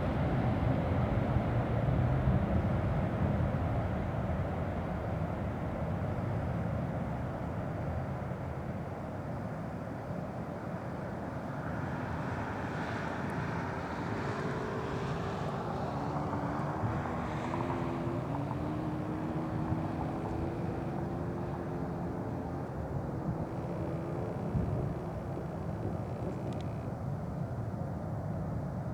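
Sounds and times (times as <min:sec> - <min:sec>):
jet engines low rumble: 0:07.1 - 0:28.9.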